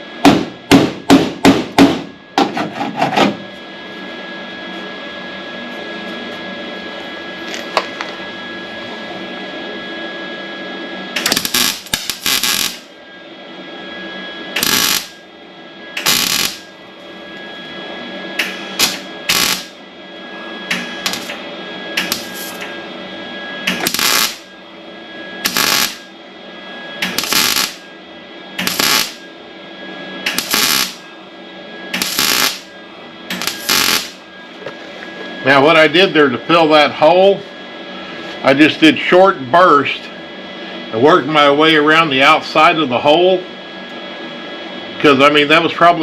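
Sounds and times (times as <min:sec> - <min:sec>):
machine hum: 0:00.0 - 0:46.0
welder bursts: 0:11.2 - 0:12.9, 0:14.6 - 0:15.2, 0:15.9 - 0:16.8, 0:18.4 - 0:19.8, 0:20.7 - 0:22.6, 0:23.6 - 0:24.5, 0:25.4 - 0:26.1, 0:27.0 - 0:27.8, 0:28.6 - 0:29.2, 0:30.2 - 0:31.1, 0:31.9 - 0:32.7, 0:33.3 - 0:34.3.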